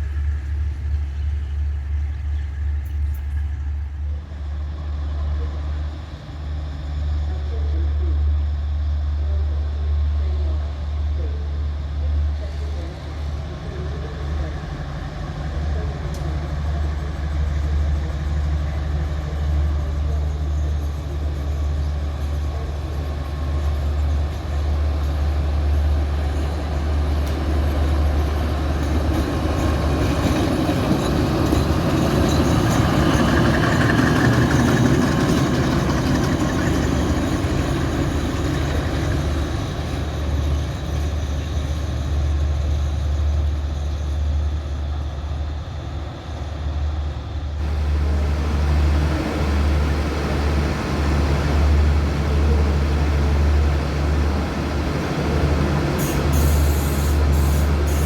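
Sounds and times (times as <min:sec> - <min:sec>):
diesel locomotive engine hum: 0:00.0 - 0:58.0.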